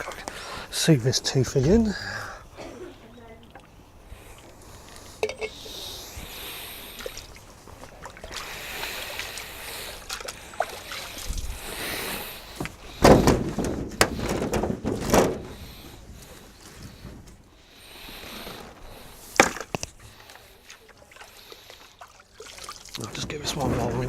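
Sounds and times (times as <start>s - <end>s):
water sloshing and splashing: 0.0s - 1.9s, 3.0s - 24.0s
knocks and rubbing: 12.6s - 15.8s.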